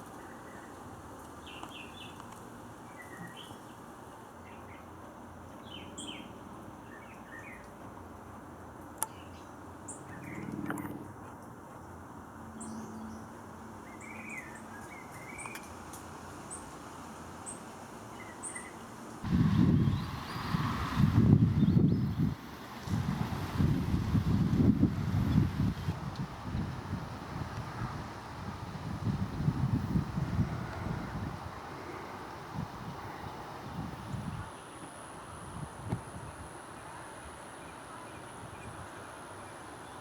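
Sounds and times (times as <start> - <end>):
small birds chirping: 0.0 - 7.8, 17.4 - 22.4
steady outdoor hiss: 0.0 - 40.0
wind on microphone: 19.2 - 34.5, 35.3 - 36.5.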